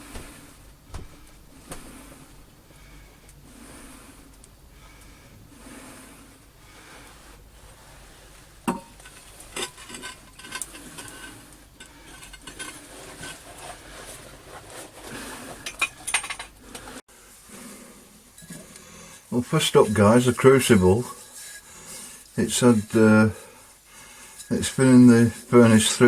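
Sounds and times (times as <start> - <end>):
metal objects clinking and knocking: 8.7 - 13.4, 15.6 - 16.6.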